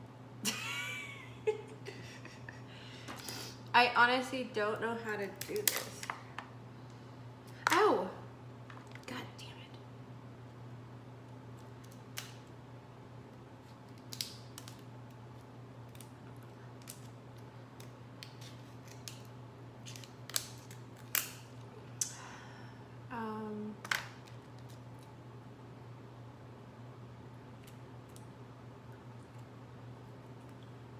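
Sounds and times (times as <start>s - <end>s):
crab shell cracking: 13.8s - 21.6s.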